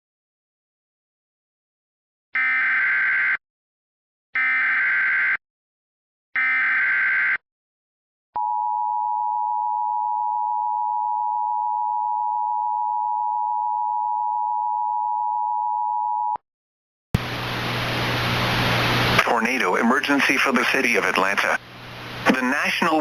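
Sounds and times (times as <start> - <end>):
hiss with low hum: 17.2 - 23.0.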